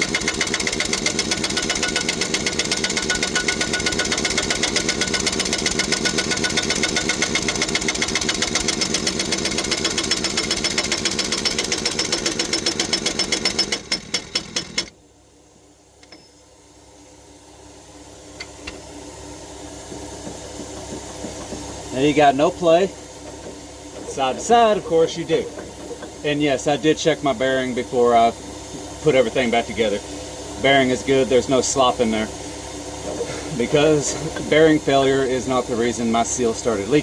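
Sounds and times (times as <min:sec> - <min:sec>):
impact wrench hammering: 0:00.0 - 0:15.0, 0:16.0 - 0:16.4, 0:19.8 - 0:22.5, 0:23.2 - 0:26.2.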